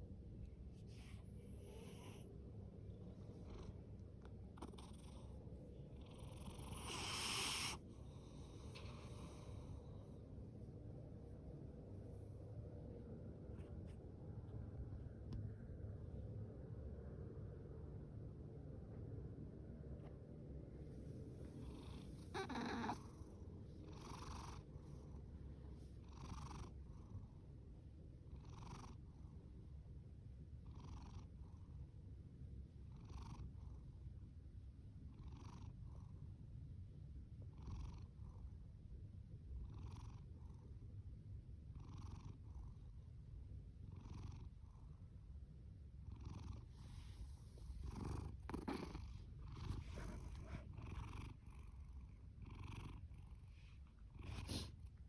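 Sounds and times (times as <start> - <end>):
cat purring: 0.4 - 10.6, 21.0 - 27.4, 28.2 - 29.2, 37.4 - 38.6, 39.5 - 40.7, 41.7 - 43.1, 43.8 - 45.2, 46.0 - 55.0
soft snoring breath: 0.8 - 2.4, 6.0 - 10.2, 21.3 - 27.2, 46.2 - 51.8, 52.4 - 55.0.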